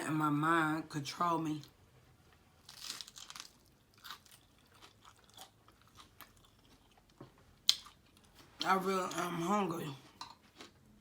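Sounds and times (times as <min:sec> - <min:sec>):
chewing and crunching: 0:02.6 - 0:09.3.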